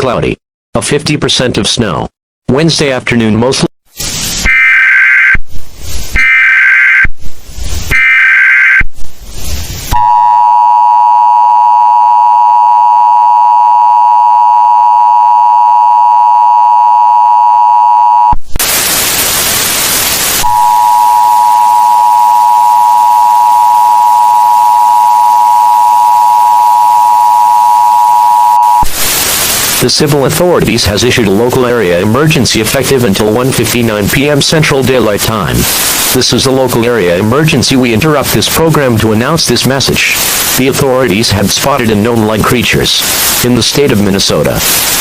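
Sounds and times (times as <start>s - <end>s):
loud static: 3.9s - 12.0s, 15.6s - 45.0s
hiss: 4.0s - 4.5s, 9.2s - 10.0s, 18.6s - 20.5s, 28.9s - 30.0s, 35.6s - 36.2s, 40.0s - 40.6s, 42.9s - 43.5s, 44.6s - 45.0s
screeching data bursts: 7.9s - 8.9s
two-tone attention signal: 10.0s - 18.4s, 20.4s - 28.9s.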